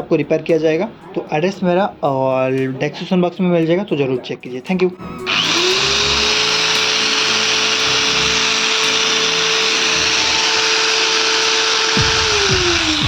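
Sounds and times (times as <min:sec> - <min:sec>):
background music: 0:00.0 - 0:13.0
angle grinder whining: 0:05.0 - 0:13.0.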